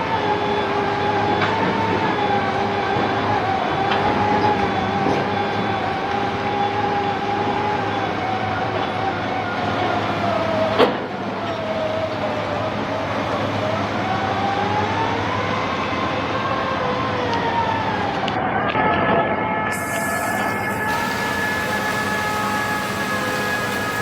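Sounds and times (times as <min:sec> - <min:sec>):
piling rig engine whining: 0:19.7 - 0:24.0.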